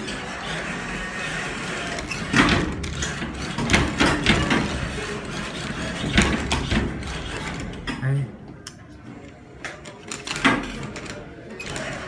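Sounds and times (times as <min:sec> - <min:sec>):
claw machine clacks and knocks: 0:00.0 - 0:08.0
machine background noise: 0:00.0 - 0:12.0.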